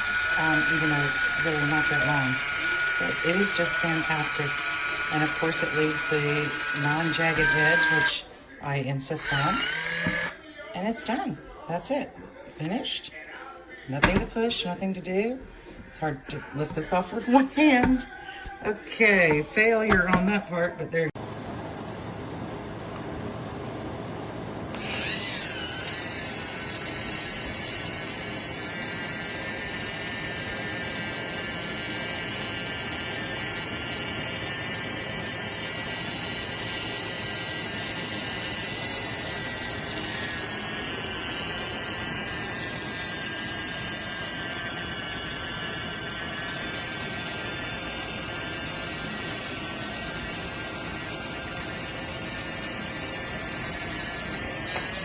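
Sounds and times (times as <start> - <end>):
electric can opener whining: 0.0 - 8.3, 9.1 - 10.4, 21.2 - 55.0.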